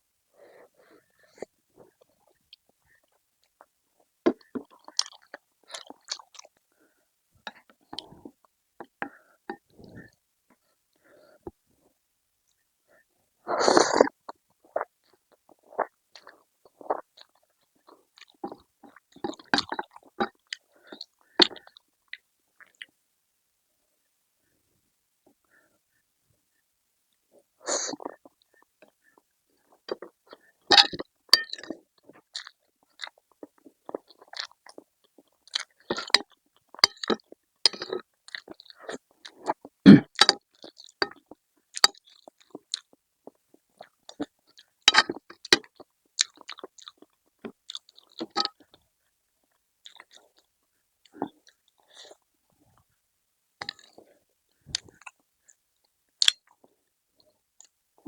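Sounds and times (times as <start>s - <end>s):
chewing and crunching: 1.3s - 6.8s, 14.0s - 23.0s, 27.3s - 48.8s, 49.4s - 52.3s, 53.6s - 55.6s, 56.2s - 57.8s.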